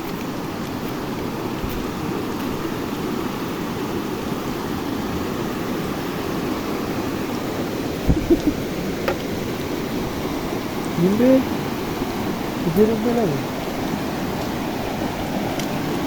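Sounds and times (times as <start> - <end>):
flowing river: 0.0 - 16.0
short low thumps: 8.0 - 8.6.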